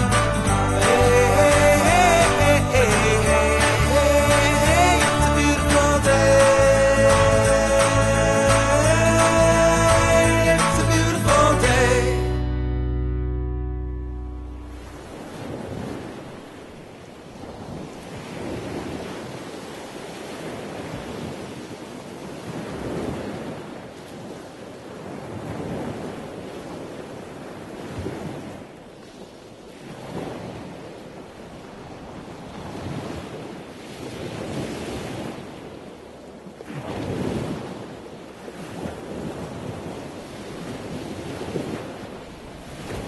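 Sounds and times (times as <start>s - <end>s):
sea waves: 0.0s - 43.0s
wind buffeting microphone: 14.7s - 43.0s.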